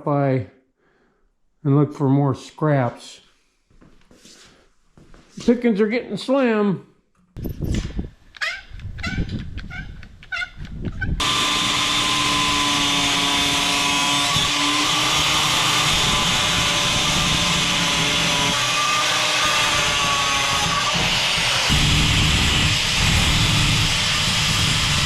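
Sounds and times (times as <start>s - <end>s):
power tool cutting steel: 11.2s - 25.0s.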